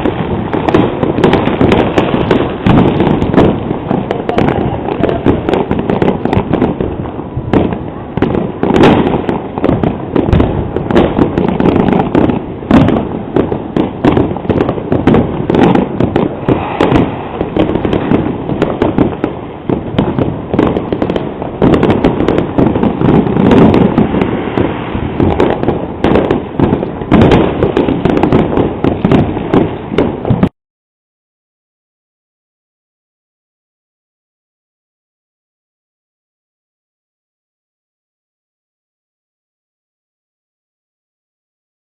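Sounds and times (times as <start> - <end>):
fireworks and firecrackers banging: 0.0 - 30.6.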